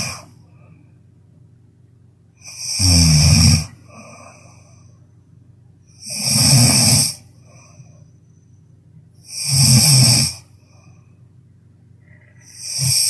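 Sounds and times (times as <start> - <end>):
person snoring loudly: 0.0 - 0.3, 2.4 - 4.4, 6.0 - 7.3, 9.3 - 10.5, 12.4 - 13.0
quiet breathing: 0.0 - 1.7, 2.4 - 13.0.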